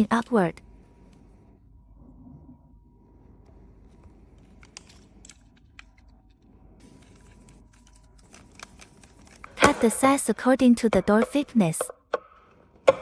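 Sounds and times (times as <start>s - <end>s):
low room hum: 0.0s - 11.8s
metal parts clicking and tapping: 4.4s - 10.3s.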